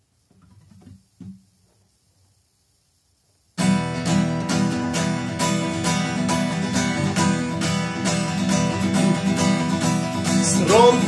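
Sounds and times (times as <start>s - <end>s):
acoustic guitar strumming: 3.6s - 11.0s.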